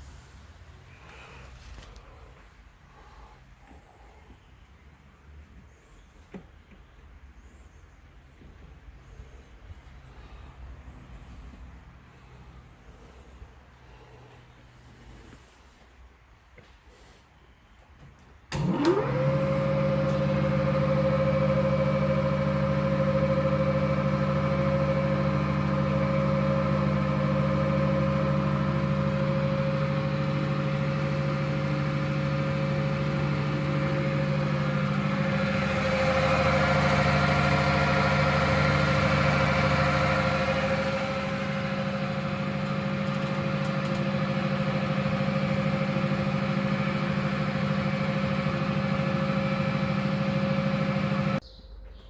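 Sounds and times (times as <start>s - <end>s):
lathe running with high whine: 18.6s - 51.4s.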